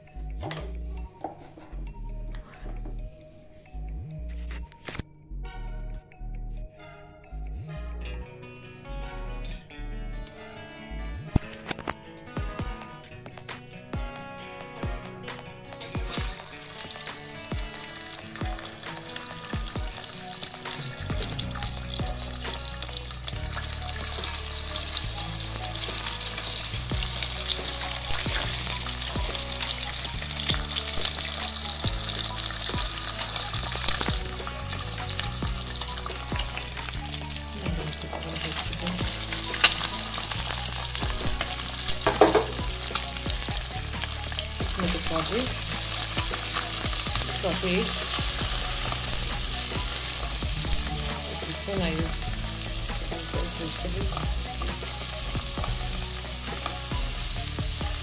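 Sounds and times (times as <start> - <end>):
soft background music: 0.0 - 58.0
food sizzling in a pan: 15.3 - 58.0.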